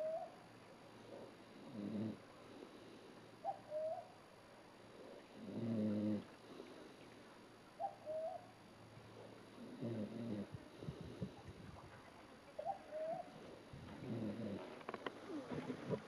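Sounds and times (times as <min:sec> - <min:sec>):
animal snoring mating call: 0:01.1 - 0:02.3, 0:05.0 - 0:06.3, 0:09.2 - 0:11.4, 0:13.0 - 0:16.0.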